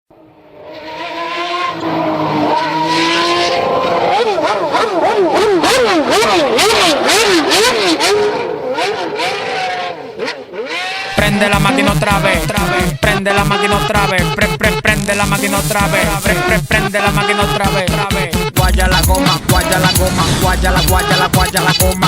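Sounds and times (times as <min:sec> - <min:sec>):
car engine revving: 0:00.2 - 0:12.8, 0:18.6 - 0:22.0.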